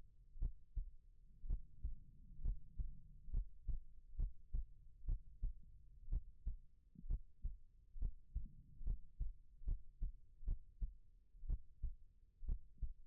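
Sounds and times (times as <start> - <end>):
faint low hum: 0.0 - 13.0
slow heartbeat: 0.0 - 13.0.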